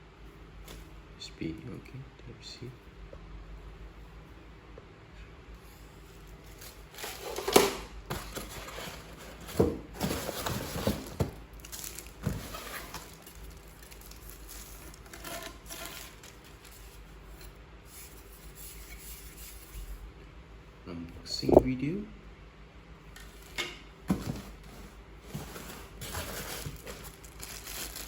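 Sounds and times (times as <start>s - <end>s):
plastic packaging crinkling: 10.0s - 17.0s, 25.4s - 28.0s.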